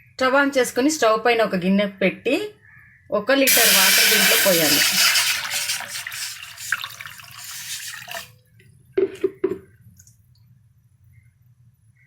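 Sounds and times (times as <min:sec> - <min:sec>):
water pouring into a pot: 0:03.5 - 0:08.3.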